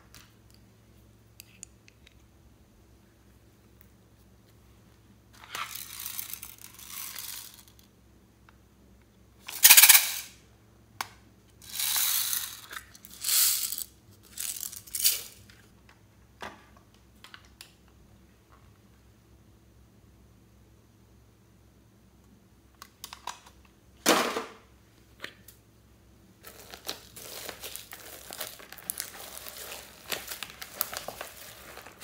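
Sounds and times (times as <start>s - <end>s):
slime crackling and rattling: 11.7s - 15.4s, 26.4s - 32.0s.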